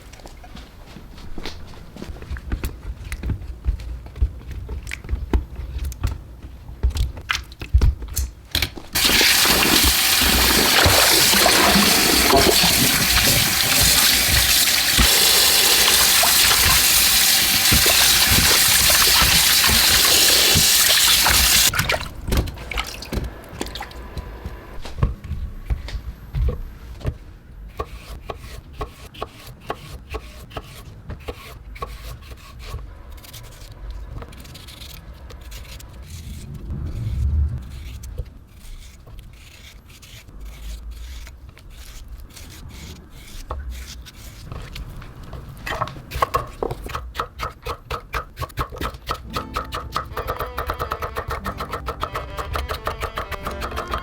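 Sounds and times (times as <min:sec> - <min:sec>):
water running in a stream: 0:09.0 - 0:23.1.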